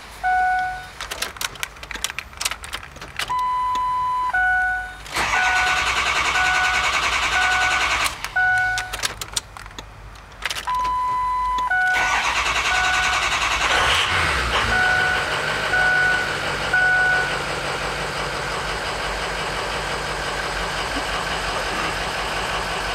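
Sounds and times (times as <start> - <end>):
diesel engine cranking and idling: 0.0 - 22.9
warning chime beeping: 3.3 - 8.9, 10.7 - 13.4, 14.6 - 17.4.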